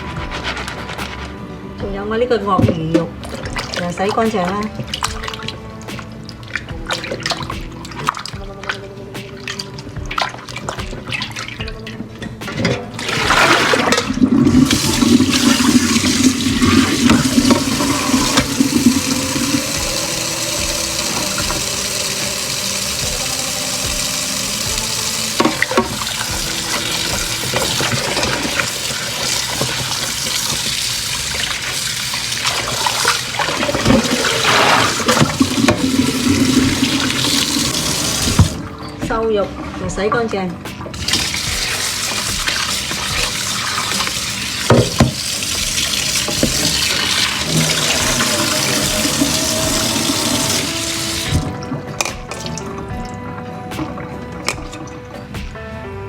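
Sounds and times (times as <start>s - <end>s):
tap water running into sink: 9.5s - 38.8s, 40.9s - 53.2s.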